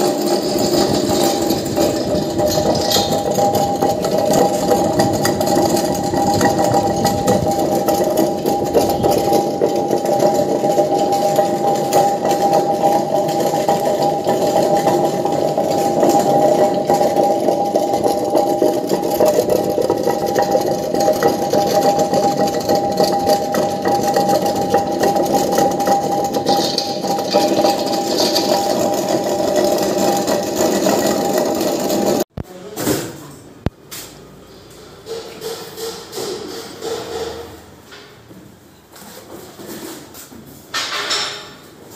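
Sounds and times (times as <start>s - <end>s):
wet grinder motor hum: 0.0s - 32.2s.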